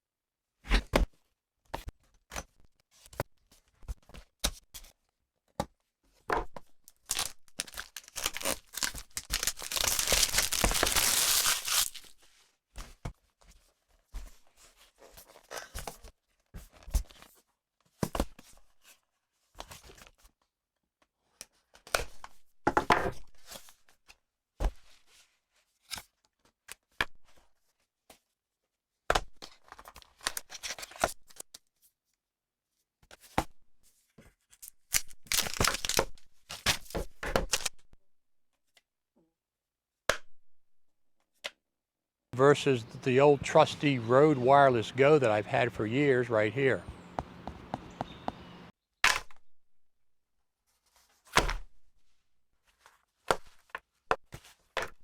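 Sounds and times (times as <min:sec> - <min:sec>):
fabric rustling: 0:08.2 - 0:12.1
microphone handling clicks and taps: 0:46.9 - 0:48.5.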